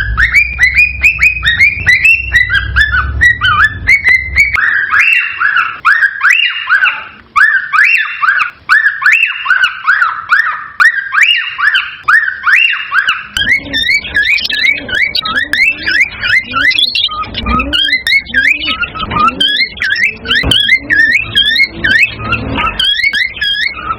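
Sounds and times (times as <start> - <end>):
low hum: 0.0 - 4.9
bird whistling: 0.0 - 23.9.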